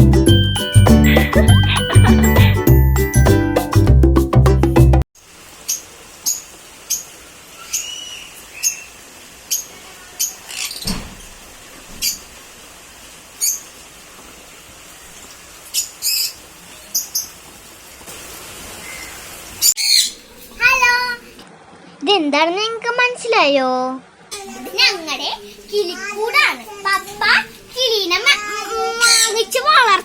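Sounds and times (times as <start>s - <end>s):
lovebirds chirping: 5.7s - 11.4s, 15.1s - 17.5s, 18.8s - 20.8s, 28.8s - 29.9s.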